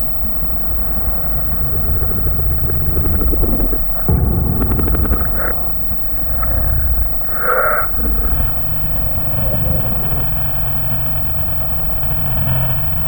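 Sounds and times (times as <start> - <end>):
deep monster growl: 1.8 - 11.9.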